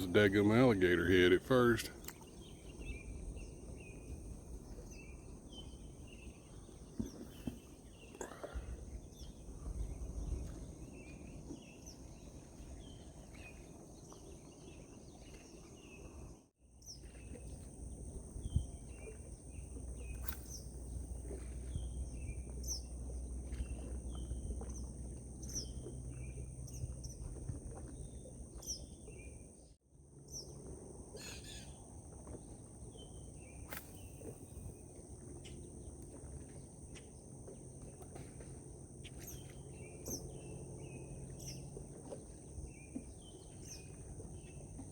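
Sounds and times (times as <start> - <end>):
small birds chirping: 18.4 - 27.4.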